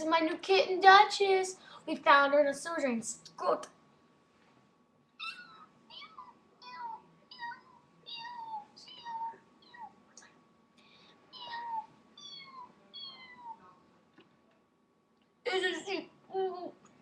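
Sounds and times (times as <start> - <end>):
kitten meowing: 5.2 - 9.9, 11.3 - 13.6.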